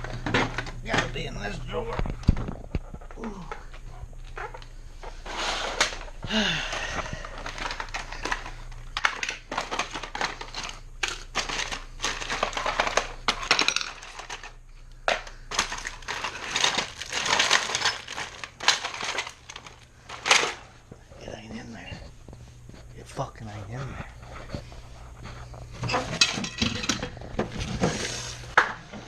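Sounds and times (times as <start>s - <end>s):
small objects clattering in drawer: 5.2s - 20.7s, 25.8s - 29.0s.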